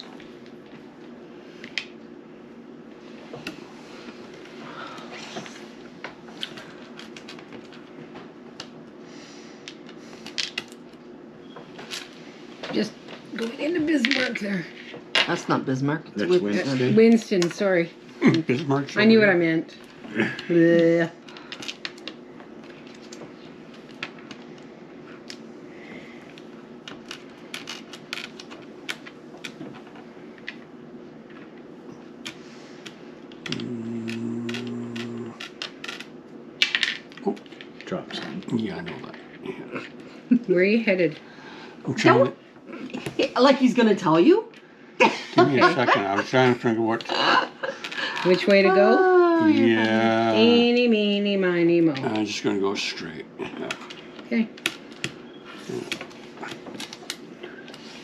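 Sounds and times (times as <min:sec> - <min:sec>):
low room hum: 0:00.0 - 0:58.0.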